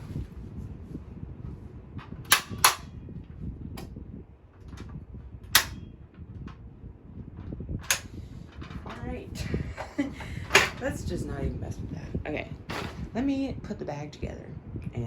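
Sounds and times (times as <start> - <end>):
vacuum handle spring snapping: 2.3 - 2.9, 5.5 - 5.9, 7.9 - 8.2, 10.5 - 10.8.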